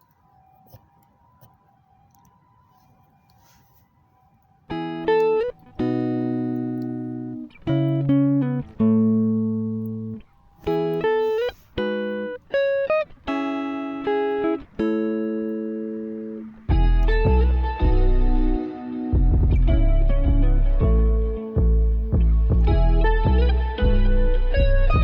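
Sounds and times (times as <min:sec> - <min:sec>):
solo guitar plucking: 0:04.7 - 0:25.0.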